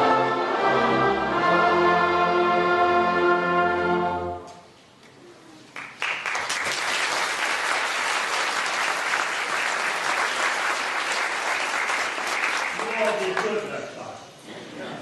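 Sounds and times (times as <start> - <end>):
orchestra chord: 0.0 - 4.5
audience applause: 5.7 - 13.8.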